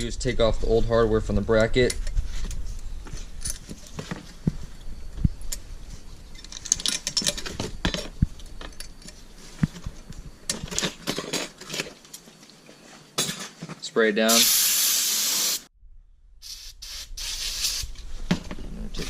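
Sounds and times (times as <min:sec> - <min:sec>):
metal clips clinking and scraping: 0:06.3 - 0:09.2.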